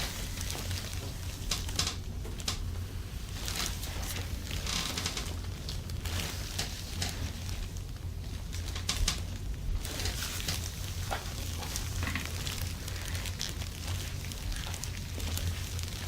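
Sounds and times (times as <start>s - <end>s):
steady low hum: 0.0s - 16.0s
hands rustling on skin: 3.2s - 7.7s.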